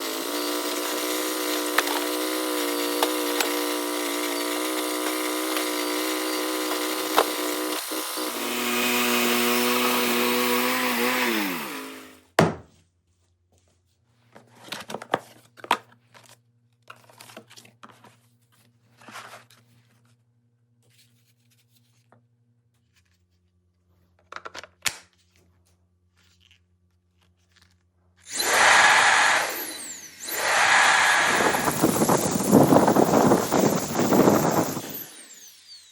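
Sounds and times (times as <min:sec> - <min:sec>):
sawmill engine running: 0:00.0 - 0:12.2, 0:28.3 - 0:35.9.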